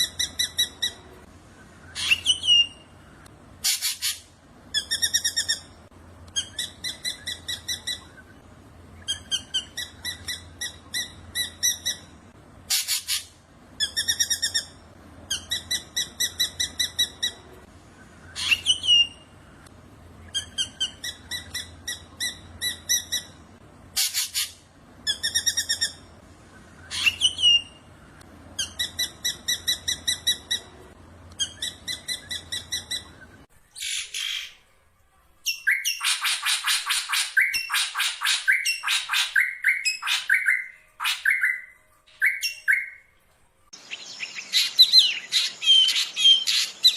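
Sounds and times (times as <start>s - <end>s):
bird singing ringing notes: 37.1s - 43.1s.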